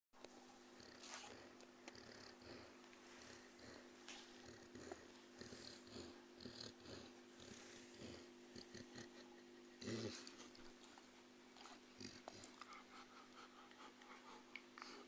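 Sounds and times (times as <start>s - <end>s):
puppy breathing quickly: 12.1s - 15.0s.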